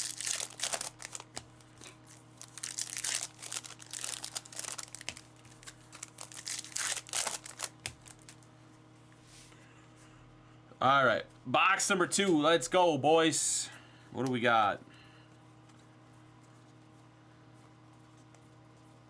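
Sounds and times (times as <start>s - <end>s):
foil wrappers tearing and crinkling: 0.0s - 8.4s
faint steady hum: 0.0s - 19.0s.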